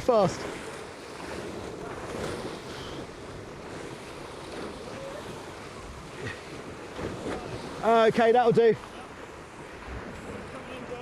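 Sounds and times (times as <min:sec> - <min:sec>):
water rushing past hulls: 0:00.0 - 0:11.0.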